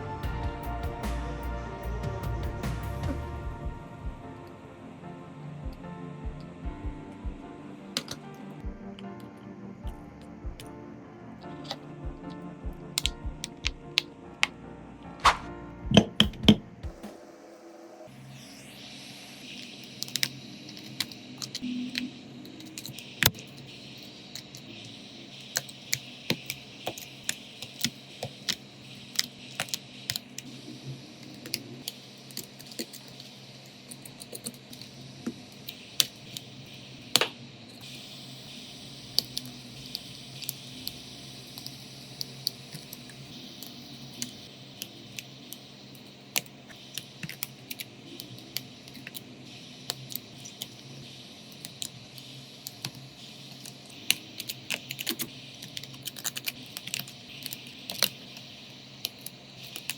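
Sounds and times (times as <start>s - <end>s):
faint hum and hiss: 15.0s - 59.9s.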